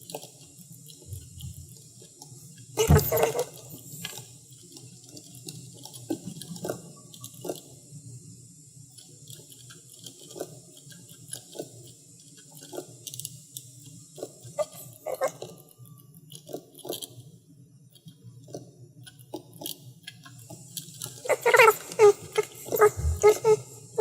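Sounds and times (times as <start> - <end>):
steady low hum: 21.9 - 24.0.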